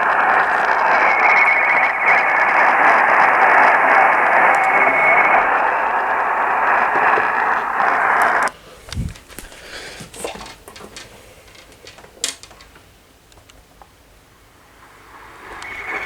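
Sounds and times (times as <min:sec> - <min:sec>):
faint wavering whistle: 0:00.0 - 0:09.0, 0:14.4 - 0:16.0
radio static hiss: 0:00.0 - 0:12.2, 0:14.4 - 0:16.0.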